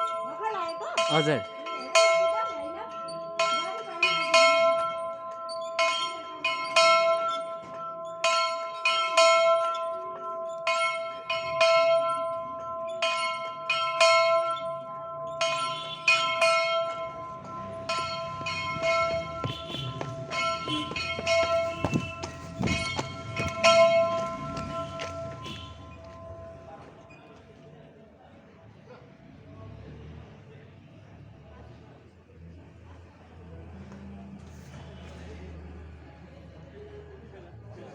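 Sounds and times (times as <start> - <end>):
bell struck by hand: 15.4 - 25.7.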